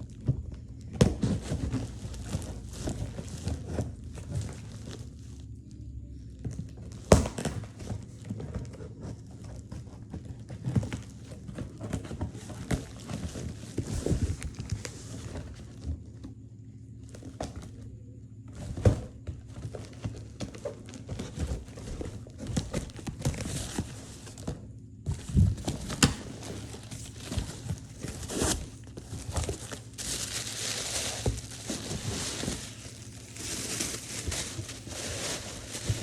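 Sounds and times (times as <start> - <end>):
packaging rustling and crinkling: 10.3 - 15.8, 18.6 - 36.0.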